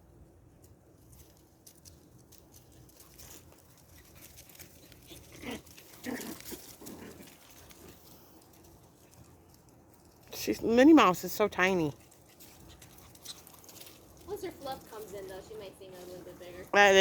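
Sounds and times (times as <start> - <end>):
puppy vocal sounds: 5.0 - 8.0.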